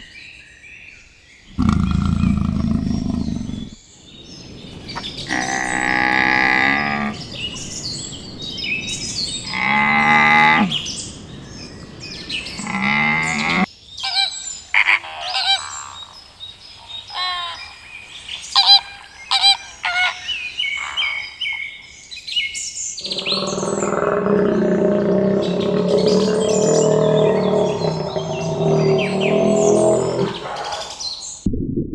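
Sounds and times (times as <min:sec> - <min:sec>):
drawn-out animal calls: 0:01.6 - 0:03.8, 0:04.4 - 0:13.7, 0:23.0 - 0:31.0
bird chirps and trills: 0:23.0 - 0:31.3.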